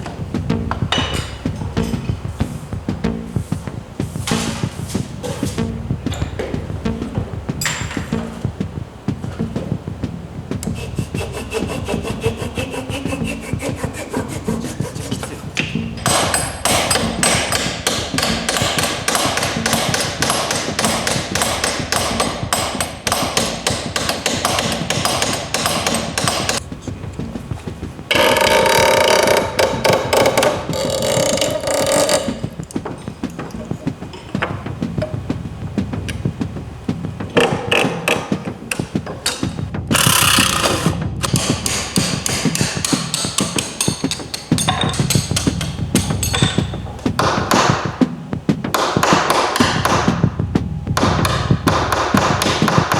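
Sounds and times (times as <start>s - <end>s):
rapid hammer blows: 0.0s - 52.9s
loud scraping: 27.3s - 34.4s.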